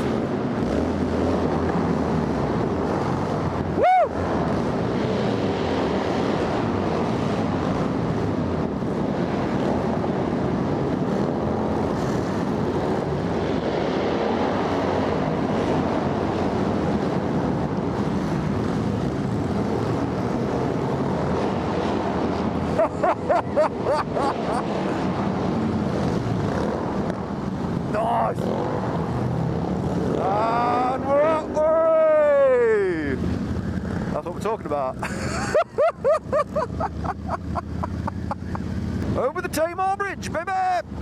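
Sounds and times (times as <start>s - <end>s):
motorcycles rumbling: 0.0s - 41.0s
person shouting woo: 3.8s - 4.2s, 30.2s - 33.0s.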